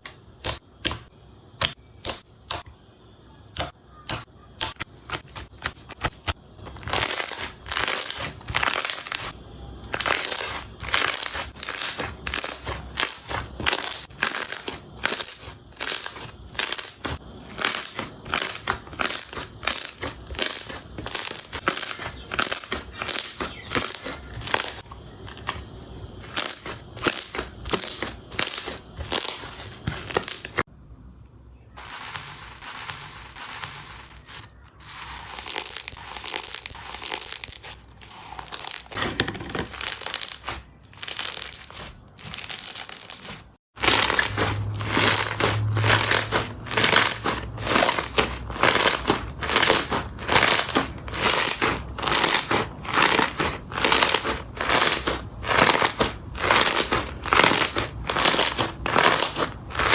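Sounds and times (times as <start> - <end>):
slime crunching when squeezed: 3.6 - 25.6, 26.2 - 30.6, 31.9 - 59.9.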